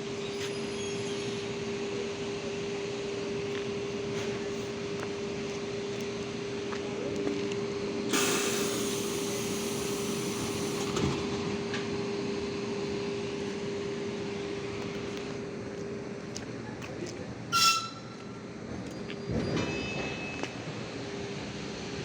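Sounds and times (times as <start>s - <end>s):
electric train hum: 0.0s - 22.0s
rail noise: 0.0s - 22.0s.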